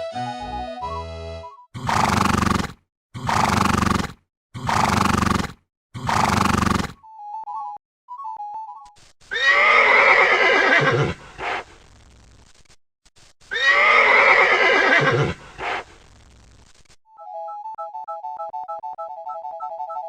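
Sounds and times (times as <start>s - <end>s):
horse neighing: 1.8s - 7.0s, 9.3s - 11.6s, 13.5s - 15.8s.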